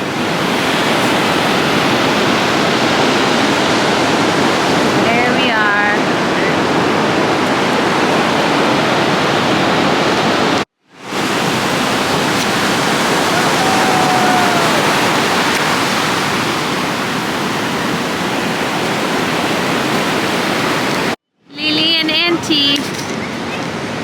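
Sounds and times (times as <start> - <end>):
ocean surf rushing: 0.0 - 21.2
faint distant call: 13.2 - 15.8.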